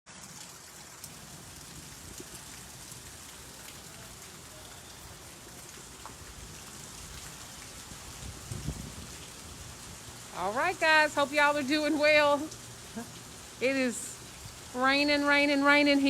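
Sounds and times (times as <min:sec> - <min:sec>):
steady rain falling: 0:00.1 - 0:16.0
ticks of raindrops: 0:00.1 - 0:16.0.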